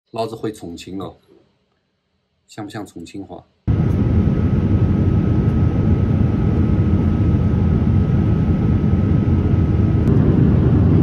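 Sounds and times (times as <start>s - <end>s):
jet cabin engine rumble: 3.7s - 11.0s.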